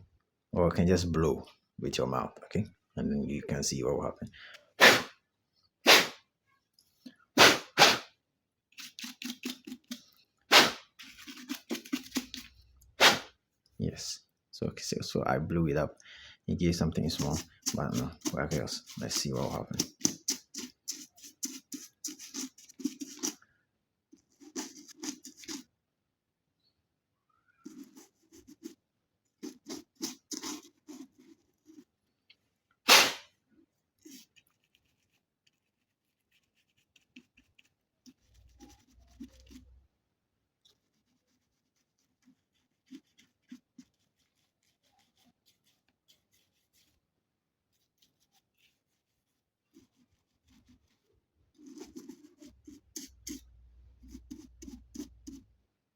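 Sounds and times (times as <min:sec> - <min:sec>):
soft brush strokes: 0:08.7 - 0:13.3, 0:16.6 - 0:23.4, 0:24.1 - 0:25.7, 0:27.6 - 0:32.4, 0:33.6 - 0:39.9, 0:40.5 - 0:55.6
burst of breath: 0:16.0 - 0:16.4.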